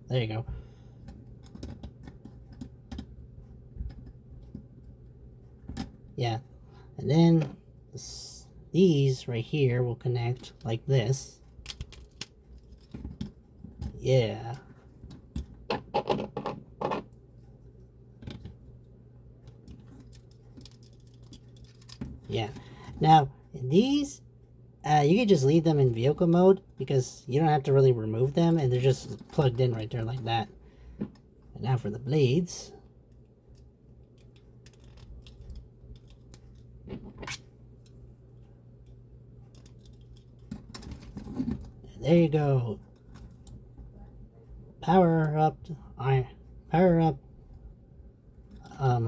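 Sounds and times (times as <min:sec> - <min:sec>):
steady low hum: 0:00.0 - 0:49.0
plastic toy parts clicking: 0:11.5 - 0:13.3, 0:19.6 - 0:22.1, 0:33.5 - 0:38.0, 0:38.8 - 0:41.6.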